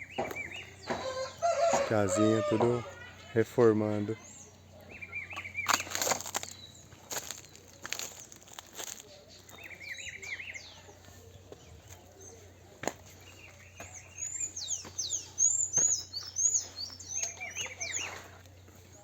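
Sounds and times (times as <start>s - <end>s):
small birds chirping: 0.0s - 19.0s.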